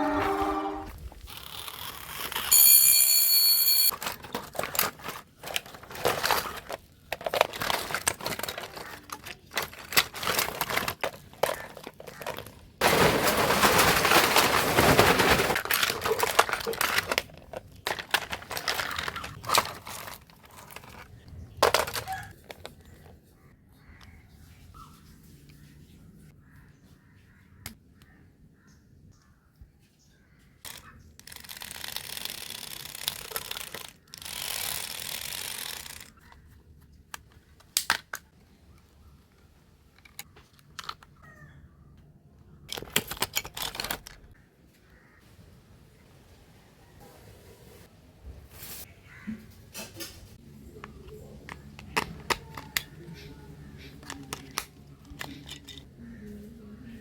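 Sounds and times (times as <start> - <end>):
short high ringing tone: 0.0 - 0.9, 2.5 - 3.9
plastic cracking and clicking: 3.9 - 12.8, 15.2 - 23.1, 37.1 - 38.4, 42.6 - 44.4, 50.0 - 55.9.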